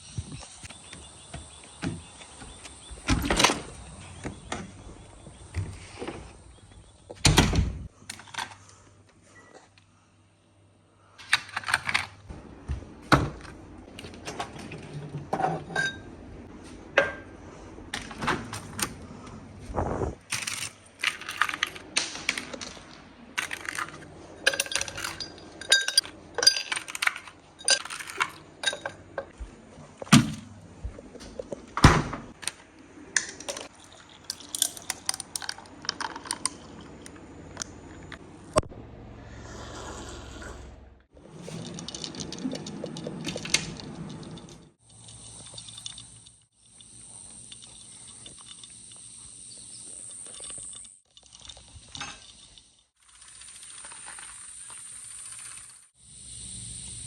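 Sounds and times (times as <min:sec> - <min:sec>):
hard objects clinking and knocking: 0:20.2 - 0:29.4, 0:33.2 - 0:37.8, 0:41.2 - 0:46.8.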